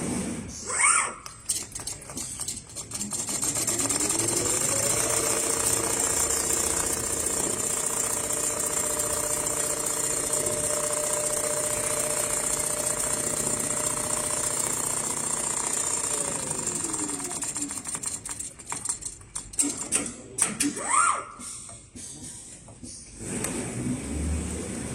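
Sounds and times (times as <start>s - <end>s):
sewing machine running: 1.5s - 19.8s.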